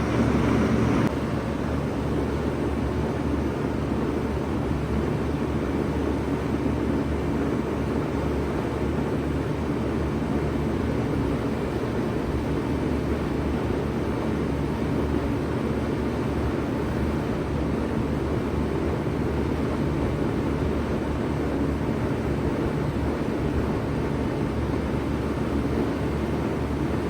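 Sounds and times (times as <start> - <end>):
compressor hum: 0.0 - 1.1
fans rushing air: 0.0 - 1.1.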